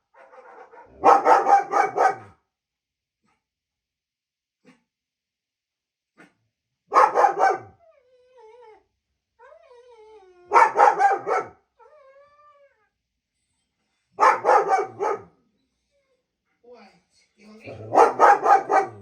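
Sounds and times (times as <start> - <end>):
dog barking: 0.1 - 2.4, 6.9 - 7.8, 10.5 - 11.6, 14.2 - 15.4, 17.8 - 19.0.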